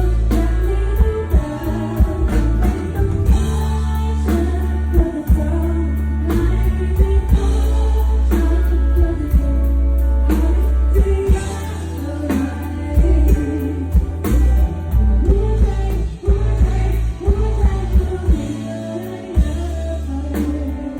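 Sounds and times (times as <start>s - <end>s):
person singing with band: 0.0s - 20.9s.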